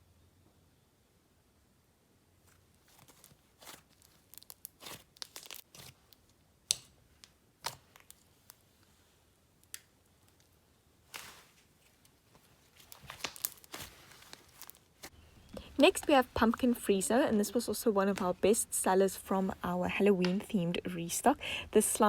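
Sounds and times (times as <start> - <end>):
slime crinkly crackles: 2.5 - 6.4, 7.6 - 8.9, 9.6 - 18.5.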